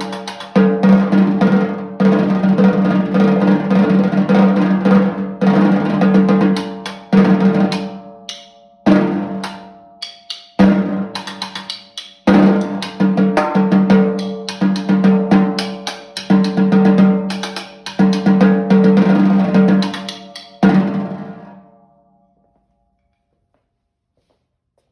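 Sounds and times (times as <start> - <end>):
snare drum rolls and strokes: 0.0 - 9.6.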